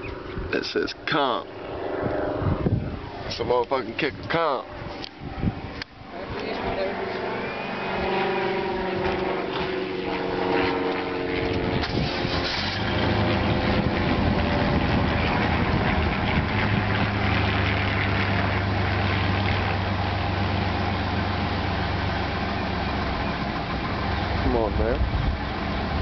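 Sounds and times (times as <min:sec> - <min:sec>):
truck engine idling: 0:08.7 - 0:26.0.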